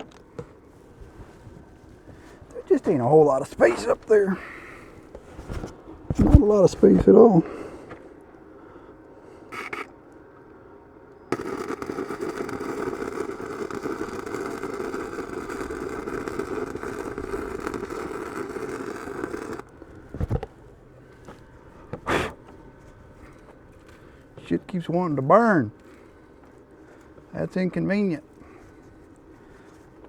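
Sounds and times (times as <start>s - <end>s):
arc welder crackling: 9.5s - 10.2s, 11.0s - 30.0s.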